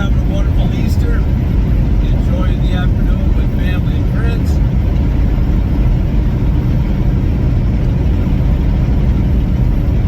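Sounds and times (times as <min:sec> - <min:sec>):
vehicle road and wind noise: 0:00.0 - 0:10.0.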